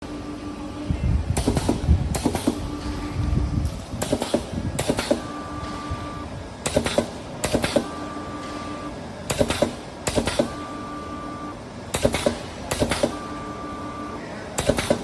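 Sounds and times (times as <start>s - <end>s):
machine motor humming: 0.0s - 15.0s
sharp clacks of cutting mechanism: 1.4s - 2.6s, 3.7s - 5.3s, 6.6s - 8.0s, 9.3s - 10.6s, 11.9s - 13.2s, 14.6s - 15.0s.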